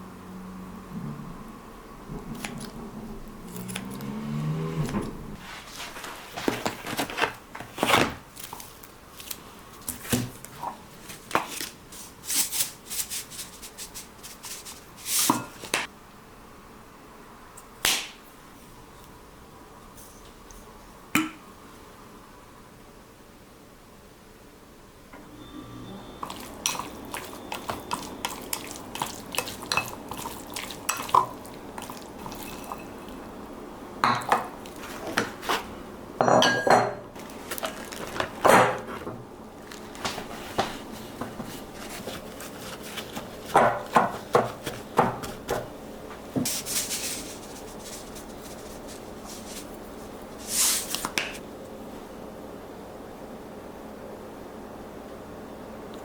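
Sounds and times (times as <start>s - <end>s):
scraping or rustling: 3.5s - 10.3s, 37.2s - 45.7s, 46.4s - 51.4s
kitchenware clattering: 26.2s - 33.1s, 34.0s - 35.5s, 36.2s - 39.2s, 43.4s - 45.7s.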